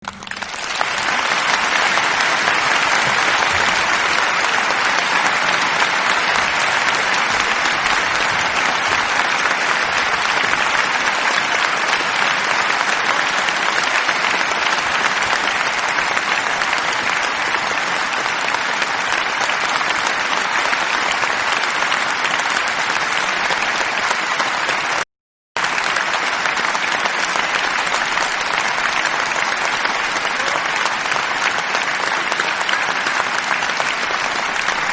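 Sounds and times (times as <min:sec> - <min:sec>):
audience applauding: 0:00.0 - 0:25.0, 0:25.6 - 0:34.9.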